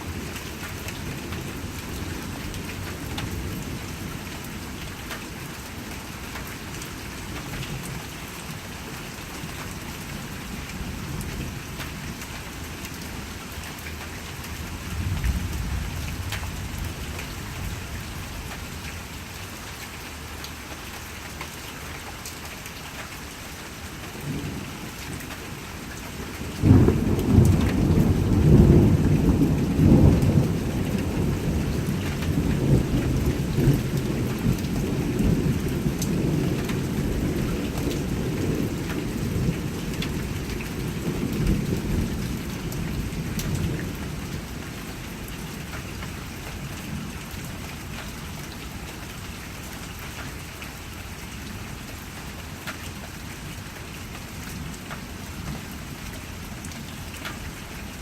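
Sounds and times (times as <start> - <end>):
steady rain falling: 0.0 - 58.0
thunder rumbling: 26.6 - 44.3.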